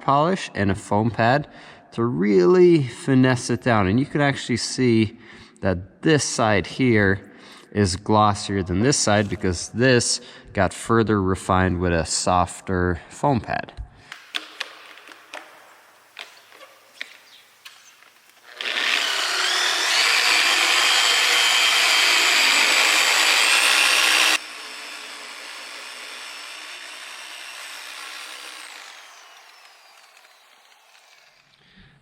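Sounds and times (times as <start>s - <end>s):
electric polisher whine: 14.8s - 31.6s.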